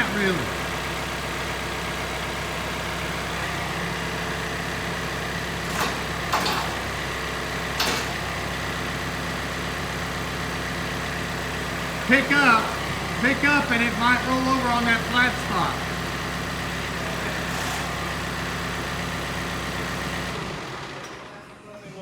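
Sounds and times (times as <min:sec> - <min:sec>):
engine idling: 0:00.0 - 0:21.5.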